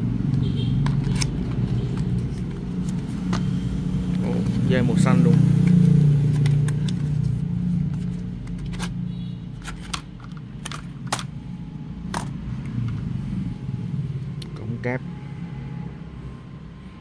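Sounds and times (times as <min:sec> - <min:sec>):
cable and packaging clicks: 0:00.2 - 0:11.4, 0:12.1 - 0:13.1.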